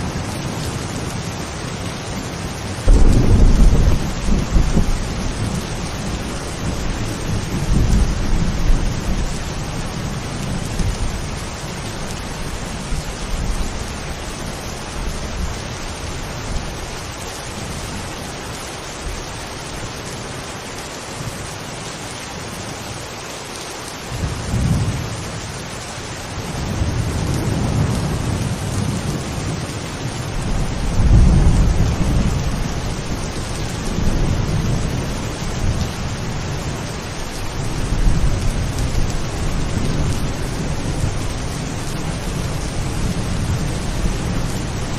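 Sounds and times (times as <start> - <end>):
steady rain: 0.0 - 44.9
rolling thunder: 2.8 - 11.3, 30.3 - 44.9.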